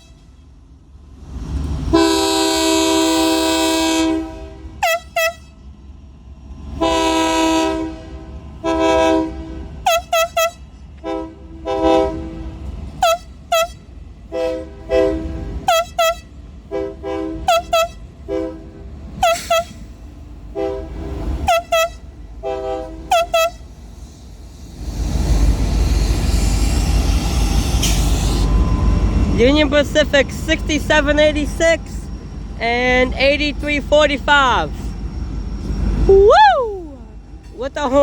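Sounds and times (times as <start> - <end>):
train rumbling: 0.0 - 38.0
locomotive air horn blasts: 1.9 - 5.6, 6.8 - 23.7.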